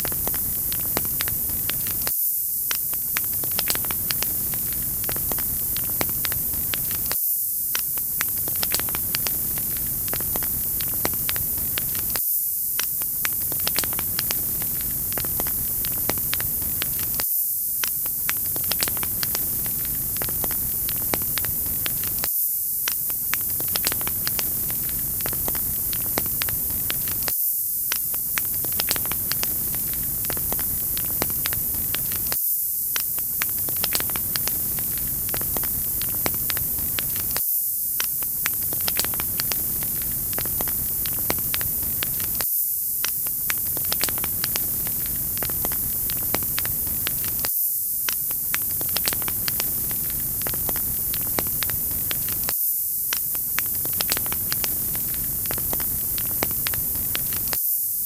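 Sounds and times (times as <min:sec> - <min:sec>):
flames hissing: 0:00.0 - 0:57.8
firewood popping and snapping: 0:33.4 - 0:37.4, 0:38.4 - 0:42.4, 0:43.5 - 0:47.5, 0:48.5 - 0:52.5, 0:53.6 - 0:57.5.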